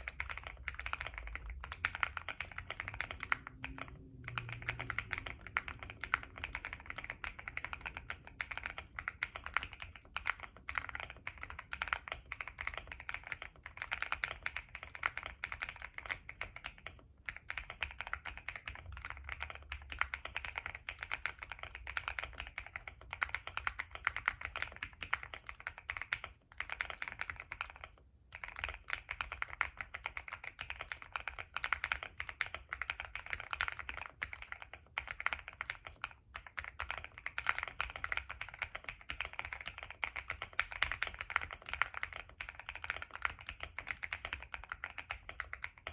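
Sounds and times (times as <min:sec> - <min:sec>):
fast typing on mechanical keyboard: 0:00.0 - 0:45.9.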